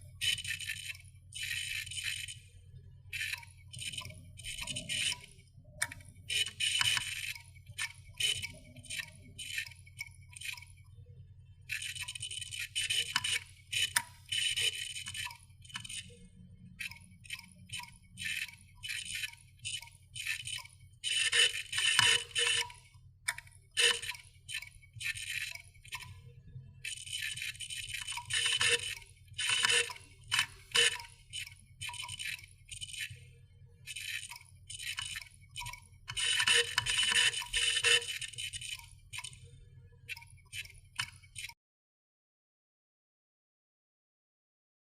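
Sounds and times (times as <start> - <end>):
hard drive clicking: 16.8 - 26.1, 26.8 - 33.2, 33.9 - 39.4.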